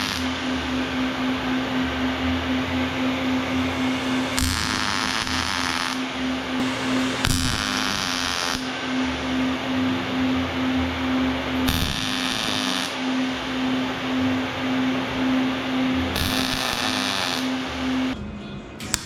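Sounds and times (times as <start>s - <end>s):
electric power tool running: 0.0s - 18.2s
low pulsing hum: 0.0s - 18.8s.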